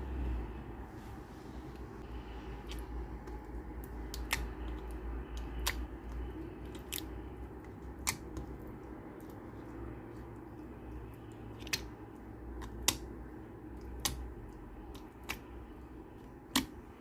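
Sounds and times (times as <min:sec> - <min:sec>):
low steady hum: 0:00.0 - 0:17.0
slime clicking and popping: 0:02.6 - 0:09.3, 0:11.4 - 0:15.6, 0:16.2 - 0:16.8.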